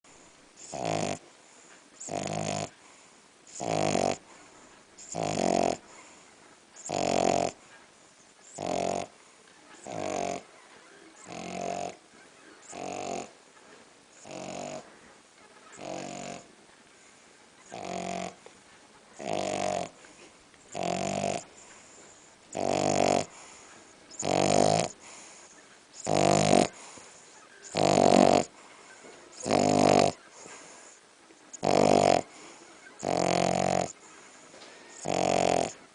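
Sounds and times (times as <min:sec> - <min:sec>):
dog snoring: 0:00.1 - 0:06.2, 0:06.8 - 0:07.7, 0:08.4 - 0:09.2, 0:09.8 - 0:10.4, 0:11.1 - 0:12.0, 0:12.6 - 0:13.4, 0:14.2 - 0:14.9, 0:15.7 - 0:16.5, 0:17.6 - 0:18.5, 0:19.2 - 0:28.6, 0:29.3 - 0:35.8.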